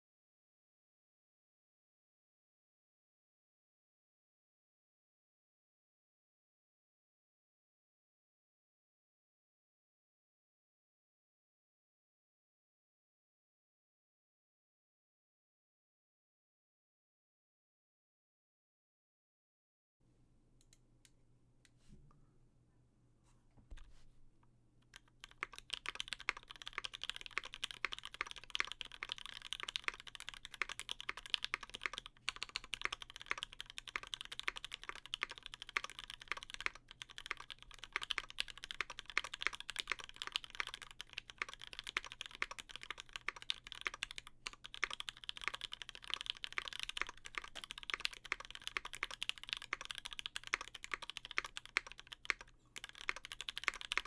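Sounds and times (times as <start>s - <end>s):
fast typing on mechanical keyboard: 24.9s - 54.0s.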